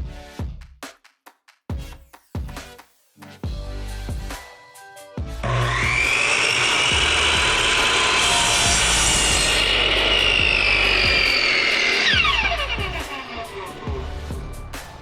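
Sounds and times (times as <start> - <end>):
background music with a beat: 0.0 - 5.4, 12.1 - 15.0
power saw whining through wood: 5.4 - 15.0.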